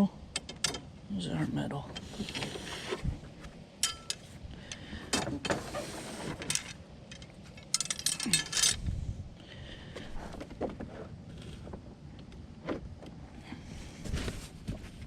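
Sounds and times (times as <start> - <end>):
metal objects clinking: 3.8 - 4.3, 6.5 - 8.8.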